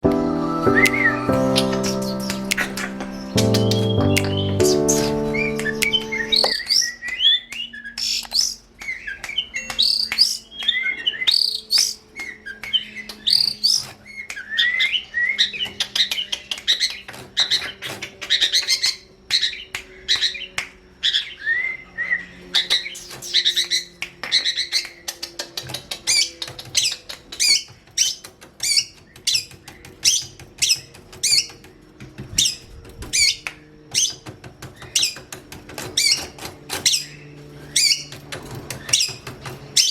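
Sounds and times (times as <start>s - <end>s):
shrike singing: 0.0s - 6.9s.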